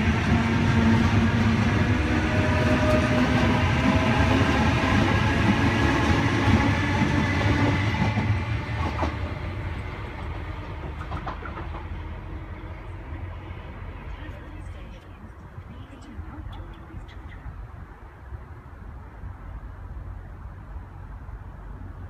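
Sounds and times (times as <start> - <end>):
electric train humming: 0.0 - 22.0
wheels clicking over rail joints: 8.0 - 12.2.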